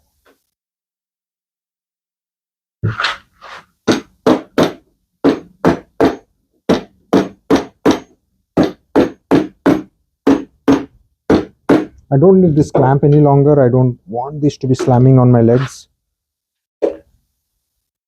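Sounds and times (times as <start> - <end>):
hammer knocking on wood: 3.9 - 12.0, 12.7 - 13.0.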